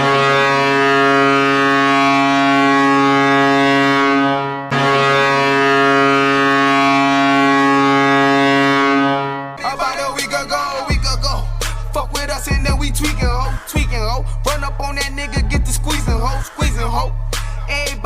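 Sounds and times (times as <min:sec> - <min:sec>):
goal horn blasts: 0:00.0 - 0:11.4.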